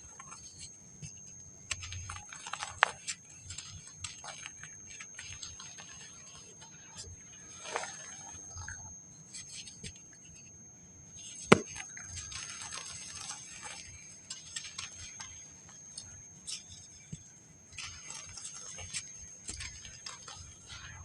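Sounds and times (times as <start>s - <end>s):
faint high whine: 0.0s - 21.0s
dry sand crumbling and crunching: 0.1s - 10.4s, 11.1s - 21.0s
sharp crack: 11.5s - 11.8s.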